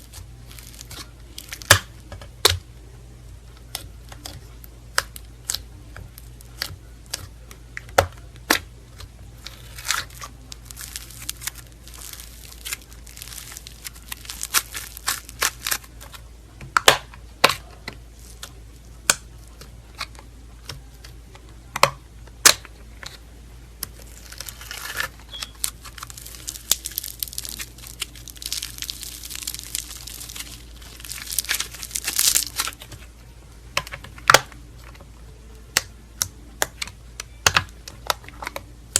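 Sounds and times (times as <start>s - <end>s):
slime popping and crackling: 0.0s - 2.6s, 3.6s - 21.1s, 23.8s - 33.1s.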